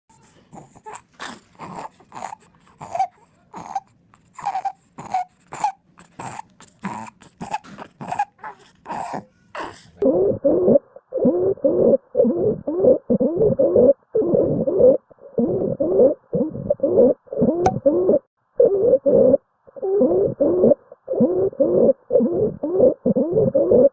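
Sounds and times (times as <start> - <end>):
harsh noisy breathing: 0.1 - 10.1.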